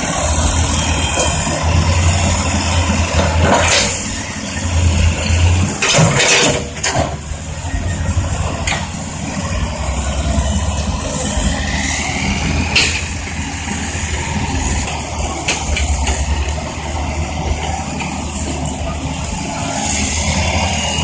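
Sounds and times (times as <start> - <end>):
diesel excavator engine running: 0.0 - 21.0
rising whine: 7.1 - 21.0.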